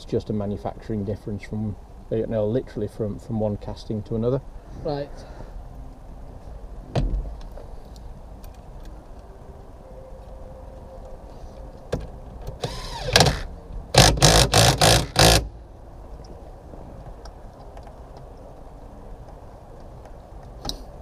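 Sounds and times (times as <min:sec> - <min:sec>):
cordless impact gun bursts: 0:12.7 - 0:15.5.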